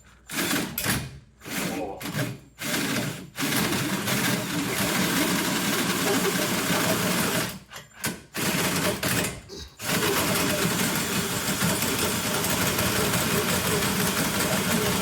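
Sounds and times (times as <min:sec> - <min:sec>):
power drill grinding through metal: 0:08.4 - 0:15.0.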